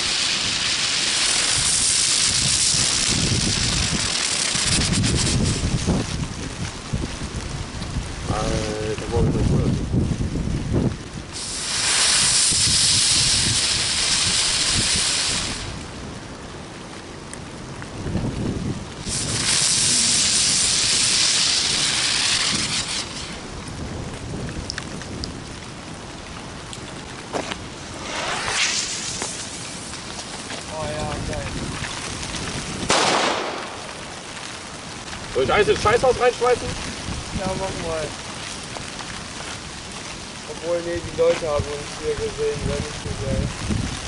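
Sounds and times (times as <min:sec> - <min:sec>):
sharp firework cracks: 0:00.0 - 0:05.8, 0:11.3 - 0:15.8, 0:19.0 - 0:23.6, 0:27.3 - 0:32.1, 0:32.8 - 0:35.2
fireworks hissing and crackling: 0:00.0 - 0:44.0.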